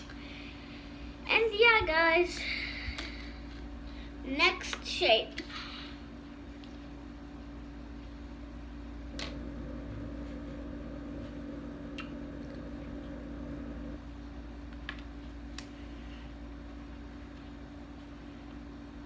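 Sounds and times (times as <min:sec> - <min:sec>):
low machine hum: 0:08.8 - 0:14.5.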